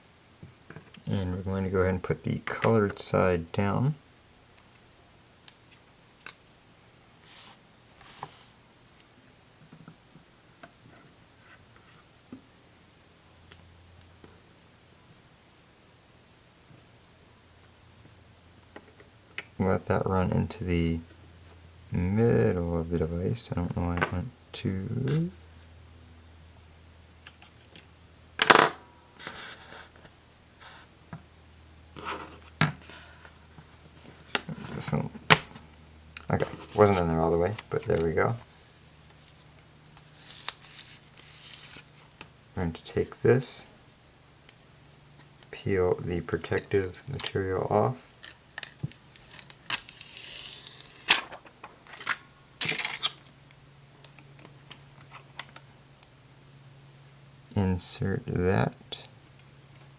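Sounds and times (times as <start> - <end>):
plastic film peeling: 36.4 - 42.3, 48.1 - 51.2.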